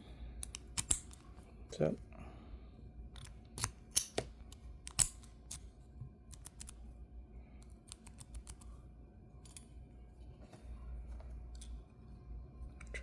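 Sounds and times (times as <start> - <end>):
lock pick clicking on padlock: 0.4 - 1.2, 3.2 - 5.7, 6.3 - 6.8, 7.6 - 8.7.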